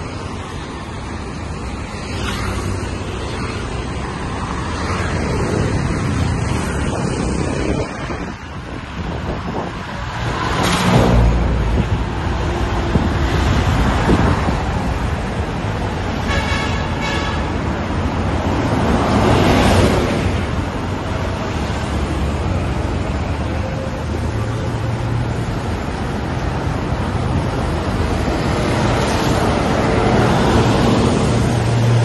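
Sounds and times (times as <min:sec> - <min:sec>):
rumble of road traffic: 0:00.0 - 0:32.0.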